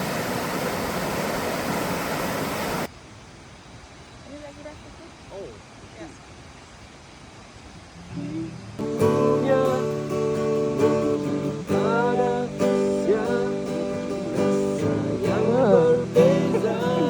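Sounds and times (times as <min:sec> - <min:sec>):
person singing: 0:08.1 - 0:17.0
strummed acoustic guitar: 0:08.1 - 0:17.0.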